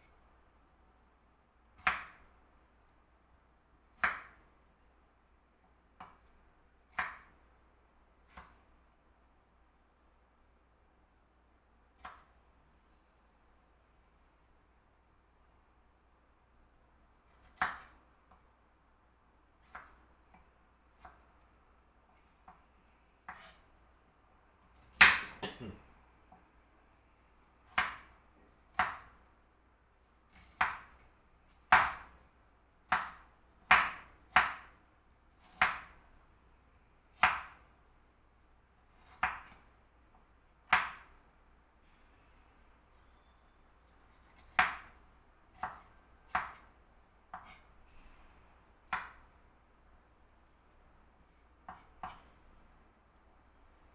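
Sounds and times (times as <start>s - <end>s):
knife chopping on cutting board: 1.8s - 2.2s, 4.0s - 4.4s, 17.3s - 18.0s, 19.6s - 20.0s, 23.3s - 23.6s, 24.8s - 25.6s, 27.7s - 29.1s, 30.3s - 31.0s, 31.7s - 32.2s, 32.9s - 34.7s, 35.4s - 36.0s, 37.2s - 37.6s, 39.0s - 39.6s, 40.6s - 41.1s, 44.2s - 46.7s, 47.3s - 47.6s, 48.9s - 49.2s, 51.7s - 52.3s.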